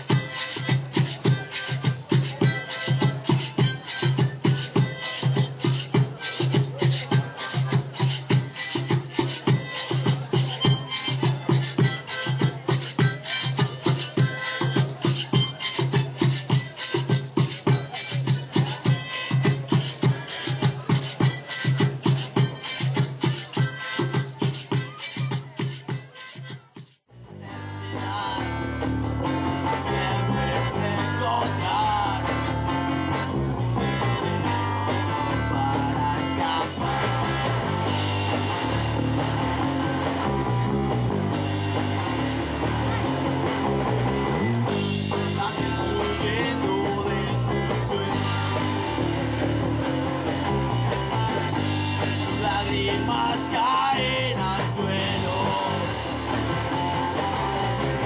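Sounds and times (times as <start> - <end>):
guitar: 0.0 - 58.0
person singing: 27.4 - 37.8, 45.1 - 49.1, 50.7 - 56.2.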